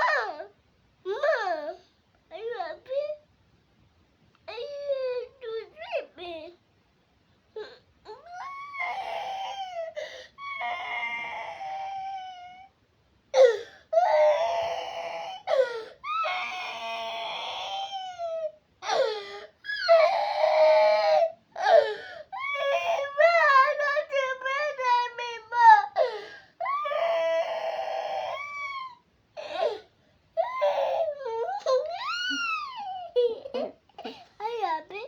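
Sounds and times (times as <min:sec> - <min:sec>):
toddler crying: 0:08.1 - 0:12.7, 0:13.4 - 0:23.9, 0:25.9 - 0:29.8, 0:30.4 - 0:34.2.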